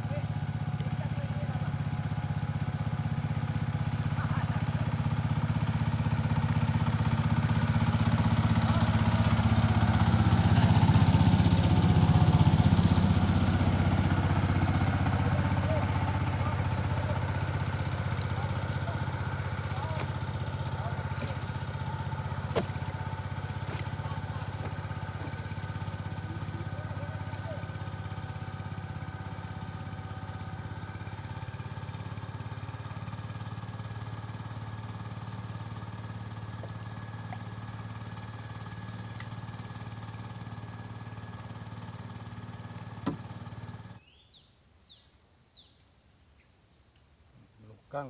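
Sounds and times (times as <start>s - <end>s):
small engine running: 0.0s - 44.4s.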